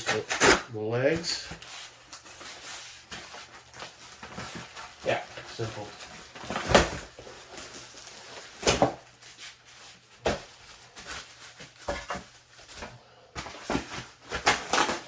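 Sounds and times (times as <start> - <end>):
plastic parts knocking and clattering: 10.2 - 15.0.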